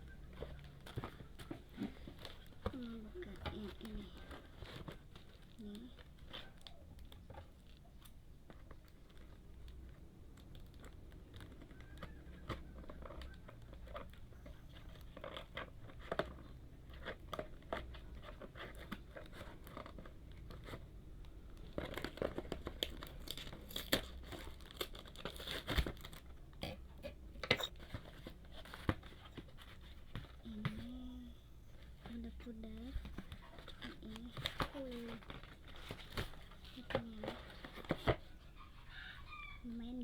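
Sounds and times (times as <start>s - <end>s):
wrapping crinkling: 0.0s - 26.6s, 27.4s - 40.0s
packaging tearing: 21.7s - 26.4s.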